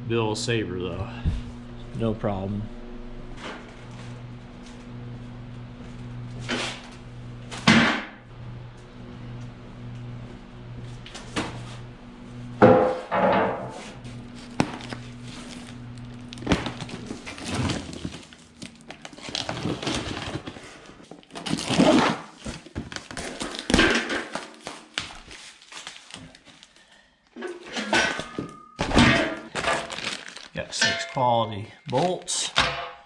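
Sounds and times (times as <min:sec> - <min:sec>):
low hum: 0:00.0 - 0:20.0
packaging crinkling: 0:14.2 - 0:27.0, 0:29.5 - 0:30.7.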